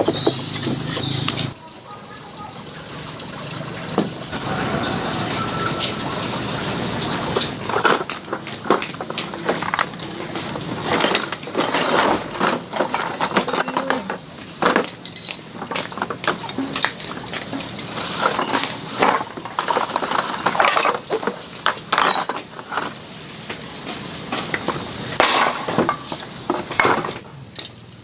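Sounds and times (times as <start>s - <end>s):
hard objects clinking and knocking: 7.5s - 28.0s.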